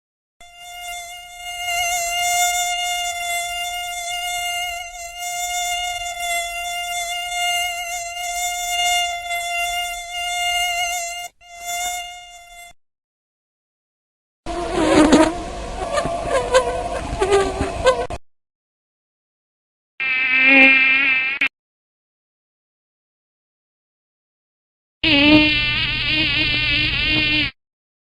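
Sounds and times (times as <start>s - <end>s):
mosquito wingbeat whine: 0.4s - 12.6s, 25.1s - 27.6s.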